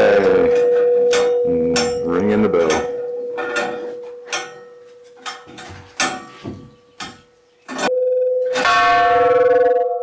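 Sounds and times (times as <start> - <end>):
church bell strikes: 0.0 - 6.7, 8.5 - 9.5.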